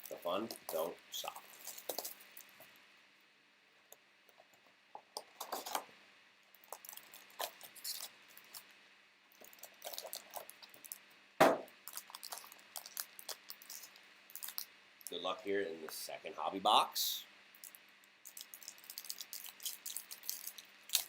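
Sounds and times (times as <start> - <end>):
cardboard and foil crinkling: 0.0 - 2.6, 6.6 - 8.7, 9.4 - 11.0, 11.8 - 14.7, 18.2 - 21.0
loud thump: 11.4 - 11.7.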